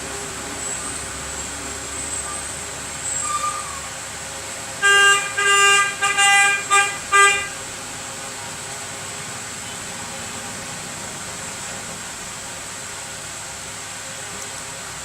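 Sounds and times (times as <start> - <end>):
vehicle horn honking: 4.8 - 7.6.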